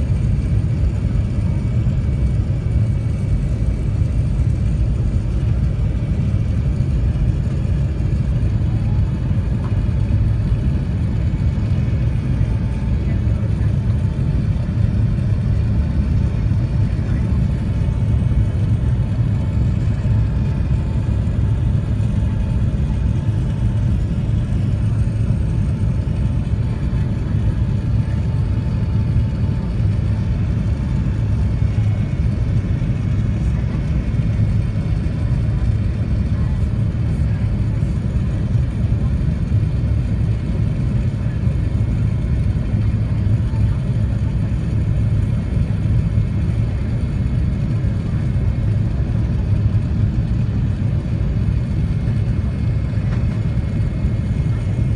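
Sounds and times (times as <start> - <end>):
aircraft engine low rumble: 0.0 - 54.9.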